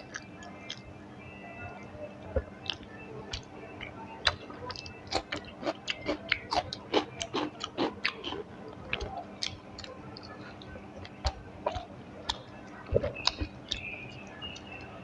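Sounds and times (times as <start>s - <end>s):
chewing with mouth smacks: 0.0s - 1.0s, 1.8s - 15.0s.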